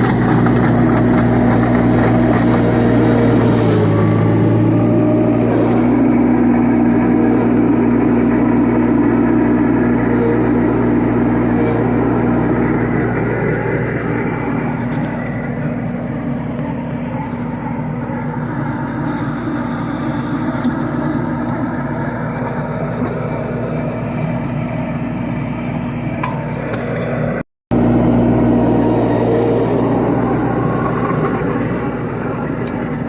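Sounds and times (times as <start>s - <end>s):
trencher digging: 0.0s - 25.1s
skid steer engine drone: 0.0s - 33.0s.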